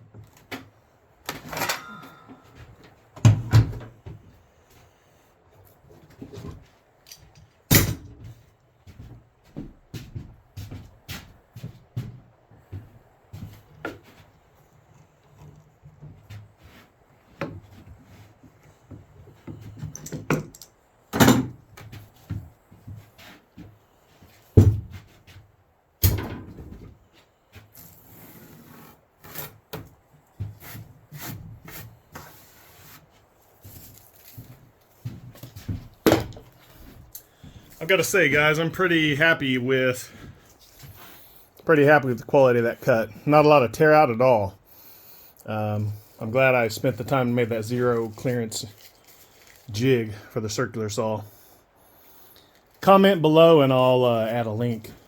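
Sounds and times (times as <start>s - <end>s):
wooden boards knocking and thumping: 24.6s - 25.1s, 36.0s - 36.5s.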